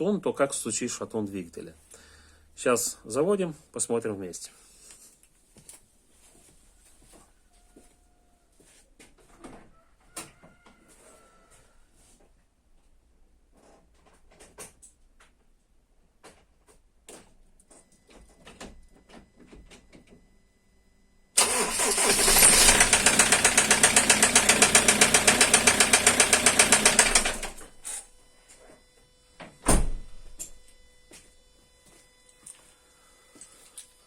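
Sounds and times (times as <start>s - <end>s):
diesel engine knocking: 22.2s - 27.6s.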